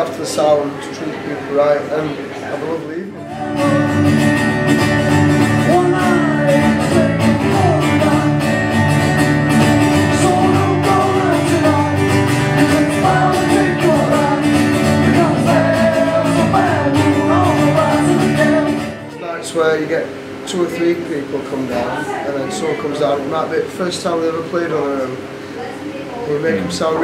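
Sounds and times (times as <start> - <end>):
acoustic guitar music: 2.7 - 19.9, 26.3 - 27.0
person singing: 3.2 - 8.8, 9.8 - 19.2.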